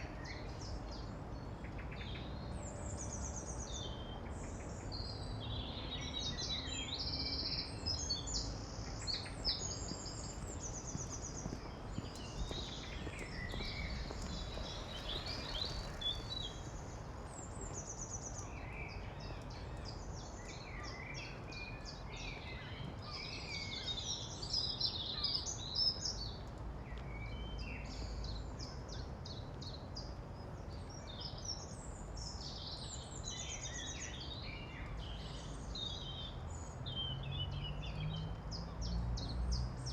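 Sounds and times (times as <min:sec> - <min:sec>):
birds chirping and trilling: 0:09.1 - 0:19.0.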